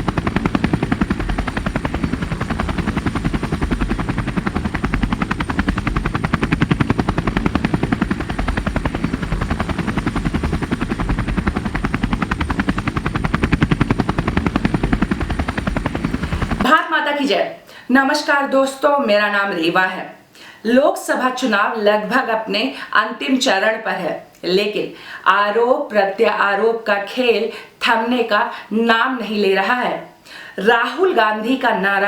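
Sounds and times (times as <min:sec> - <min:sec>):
helicopter rotor beating: 0:00.0 - 0:16.7.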